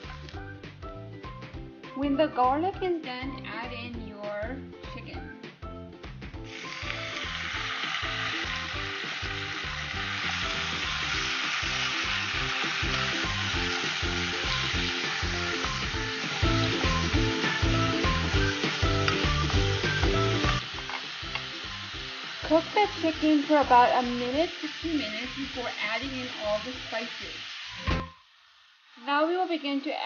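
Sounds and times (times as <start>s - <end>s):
light background music: 0.0s - 30.0s
chicken sizzling in a hot pan: 6.4s - 30.0s.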